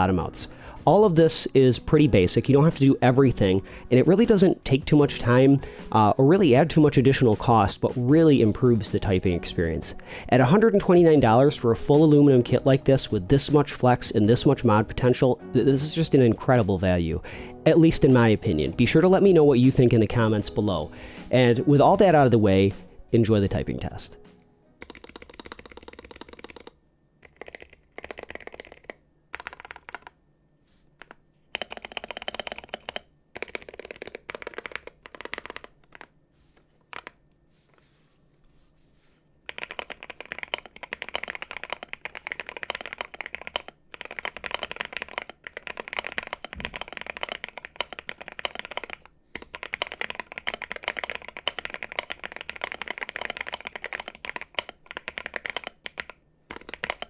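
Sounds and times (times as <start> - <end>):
typing on a keyboard: 24.8 - 30.2, 31.0 - 36.1, 36.9 - 37.2, 39.5 - 57.0.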